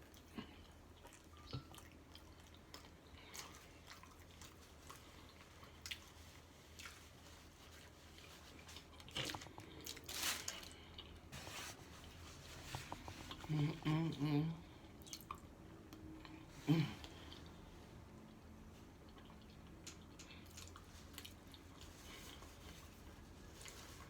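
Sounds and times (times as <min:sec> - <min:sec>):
chewing and biting food: 0:00.0 - 0:10.1, 0:19.0 - 0:24.0
crunching and rustling: 0:03.2 - 0:13.7.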